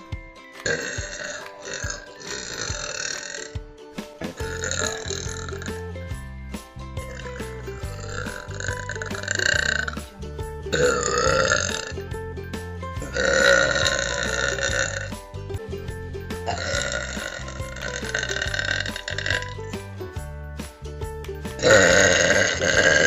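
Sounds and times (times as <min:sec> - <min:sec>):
music with steady beat: 0:00.0 - 0:23.0
person burping: 0:00.6 - 0:03.6, 0:04.2 - 0:05.9, 0:07.0 - 0:10.1, 0:10.7 - 0:12.0, 0:13.0 - 0:15.2, 0:16.4 - 0:19.8, 0:21.6 - 0:23.0.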